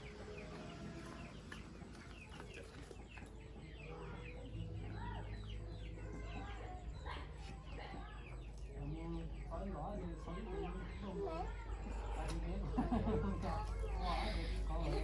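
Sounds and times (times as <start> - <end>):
chickens clucking: 0.0 - 15.0
low steady hum: 0.0 - 15.0.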